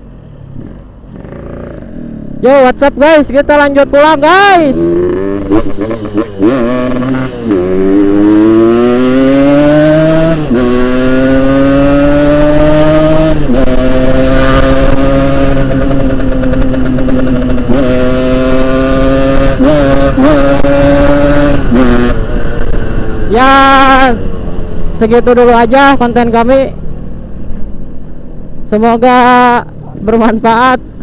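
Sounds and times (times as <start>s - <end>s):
motorcycle engine accelerating: 0.0s - 31.0s.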